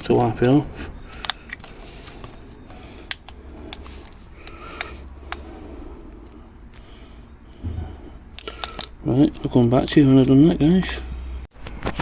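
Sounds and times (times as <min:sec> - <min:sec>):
low hum: 0:00.9 - 0:08.8.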